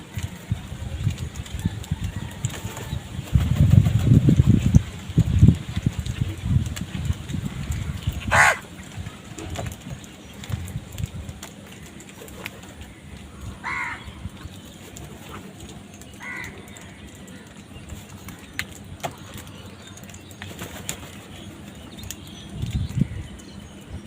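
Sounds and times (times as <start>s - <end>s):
crow cawing: 8.3s - 8.6s, 13.6s - 14.1s, 16.2s - 17.0s.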